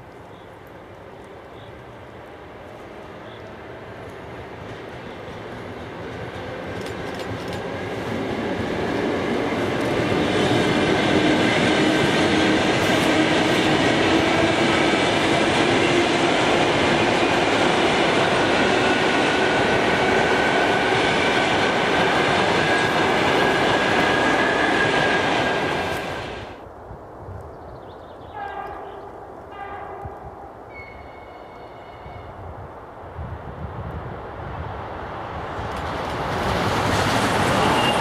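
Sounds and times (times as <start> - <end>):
high whine of train: 0.0 - 27.2, 28.2 - 38.0
electric train passing: 2.2 - 26.6, 28.7 - 38.0.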